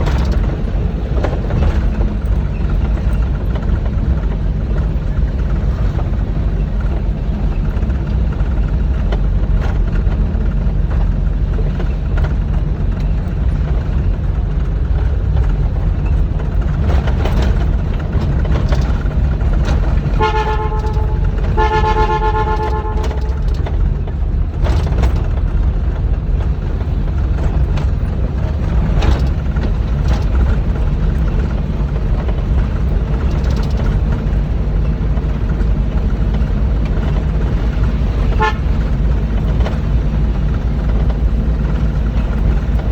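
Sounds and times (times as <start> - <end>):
diesel engine rumbling: 0.0 - 42.9
horn tooting: 19.8 - 23.7, 38.2 - 38.9.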